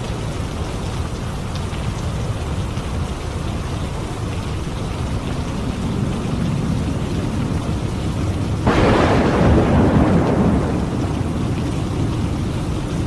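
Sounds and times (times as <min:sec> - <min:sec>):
heavy rain: 0:00.0 - 0:13.0
low rumble: 0:05.0 - 0:13.0
thunderclap: 0:05.4 - 0:13.0.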